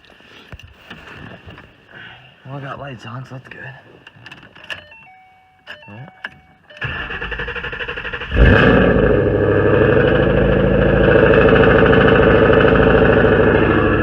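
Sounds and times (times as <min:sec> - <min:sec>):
car engine idling: 0:06.8 - 0:14.0
starter cranking engine: 0:06.8 - 0:14.0.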